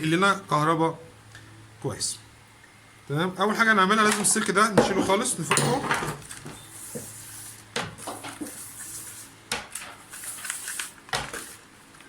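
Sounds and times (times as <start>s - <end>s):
hand tools clicking and knocking: 4.8s - 6.2s.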